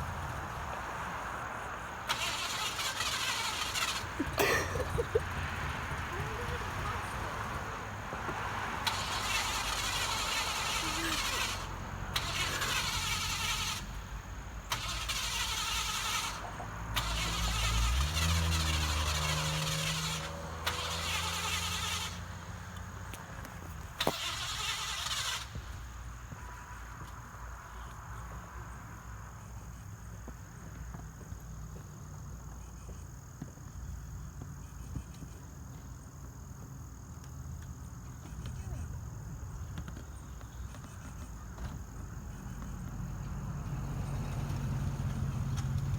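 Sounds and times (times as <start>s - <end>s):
car starter cranking engine: 1.8s - 26.3s.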